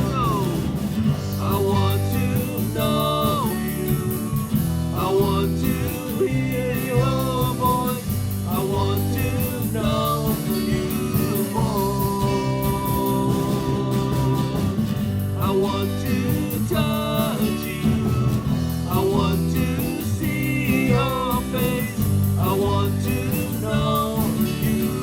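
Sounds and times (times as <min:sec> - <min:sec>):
worship band playing: 0:00.0 - 0:25.0
person singing long notes: 0:01.3 - 0:14.8.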